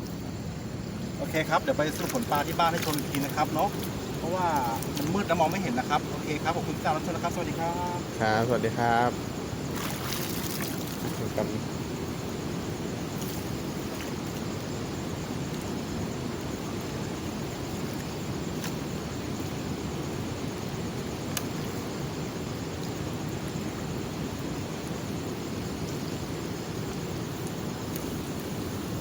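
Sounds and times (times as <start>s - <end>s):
faint ticks: 27.4s - 28.5s.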